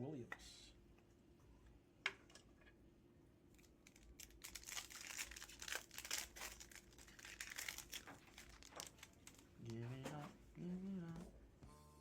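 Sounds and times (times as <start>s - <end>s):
foil wrapper crinkling: 3.6s - 10.3s.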